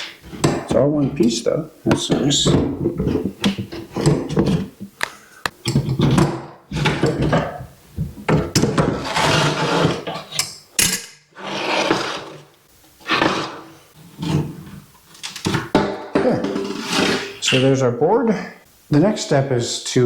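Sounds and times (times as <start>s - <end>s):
wooden knocks and clunks: 1.9s - 5.0s, 5.6s - 9.1s, 15.4s - 16.6s
trim scraping: 8.9s - 10.2s.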